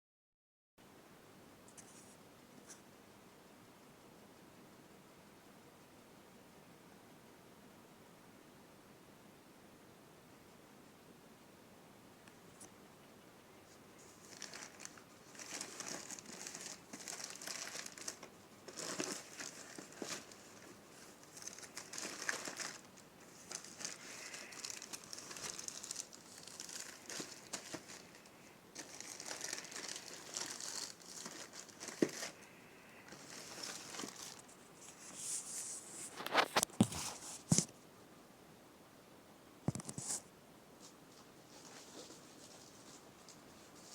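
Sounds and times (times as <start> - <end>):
packaging crinkling and rustling: 14.0 - 32.5, 33.1 - 35.1, 36.1 - 37.7.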